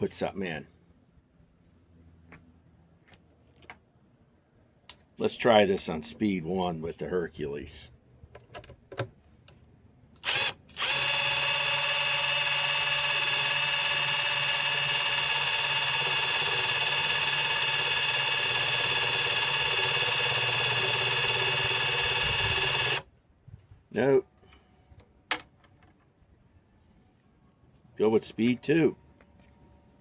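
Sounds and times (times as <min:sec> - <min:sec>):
impact driver whining: 0:10.2 - 0:23.1.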